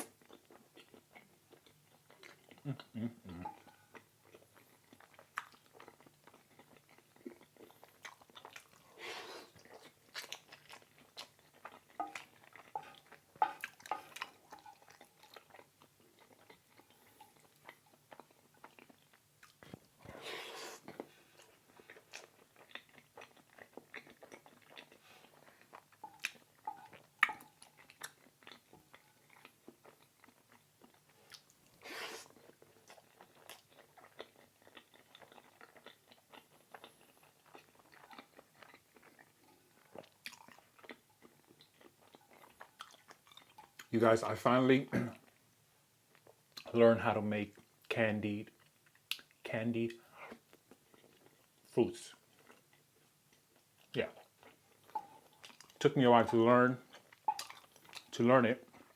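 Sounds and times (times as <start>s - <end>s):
person chewing food: 0.0s - 43.9s, 46.1s - 46.8s, 48.5s - 58.9s.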